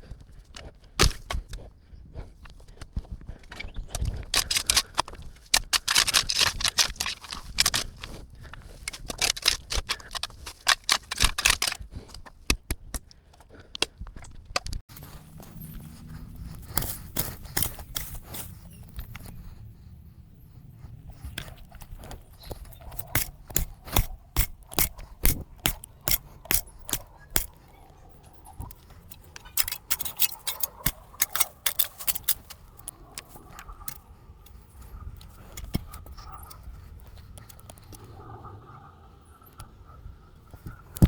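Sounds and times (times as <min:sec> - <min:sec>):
shovel scraping into wet dirt: 0:15.0 - 0:18.8, 0:22.7 - 0:27.6.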